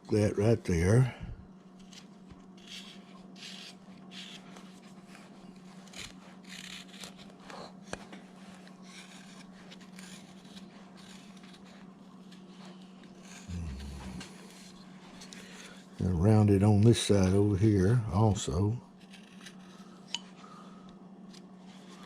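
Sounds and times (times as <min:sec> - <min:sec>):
low hum: 0:00.0 - 0:22.0
knife scraping wood: 0:01.8 - 0:16.0, 0:18.9 - 0:20.6.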